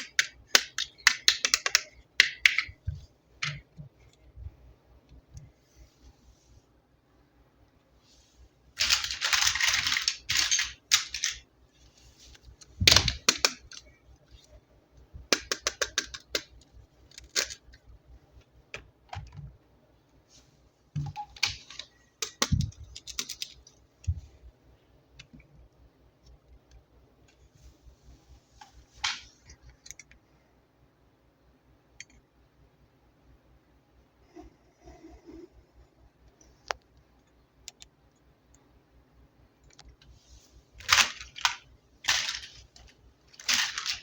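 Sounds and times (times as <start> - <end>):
packaging rustle: 8.8 - 11.4, 40.8 - 44.0.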